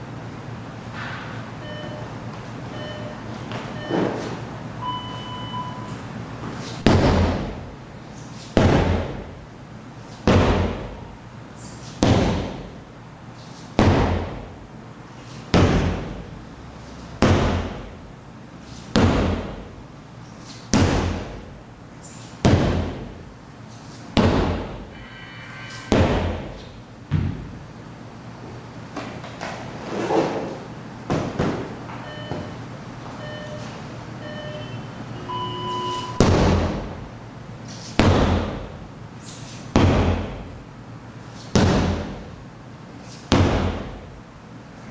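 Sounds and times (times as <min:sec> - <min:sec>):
short electronic beep: 0:01.6 - 0:02.1, 0:02.7 - 0:04.0, 0:04.8 - 0:06.0, 0:32.1 - 0:32.6, 0:33.2 - 0:36.3
sledgehammer strikes: 0:06.8 - 0:07.6, 0:08.6 - 0:09.3, 0:10.2 - 0:11.0, 0:12.0 - 0:12.7, 0:13.8 - 0:14.5, 0:15.5 - 0:16.3, 0:17.2 - 0:17.9, 0:18.9 - 0:19.6, 0:20.7 - 0:21.4, 0:22.4 - 0:23.1, 0:24.2 - 0:24.8, 0:25.9 - 0:26.6, 0:36.1 - 0:37.0, 0:38.0 - 0:38.7, 0:39.7 - 0:40.5, 0:41.5 - 0:42.3, 0:43.3 - 0:44.0.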